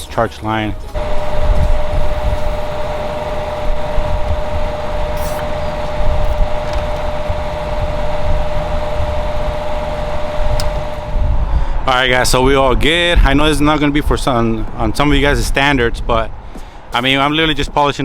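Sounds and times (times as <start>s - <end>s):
hvac equipment droning: 0.5s - 12.5s.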